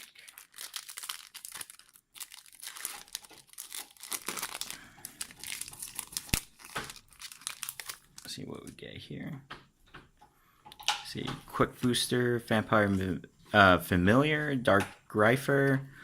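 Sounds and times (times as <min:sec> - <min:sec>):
foil wrapper crinkling and tearing: 0:00.0 - 0:08.8.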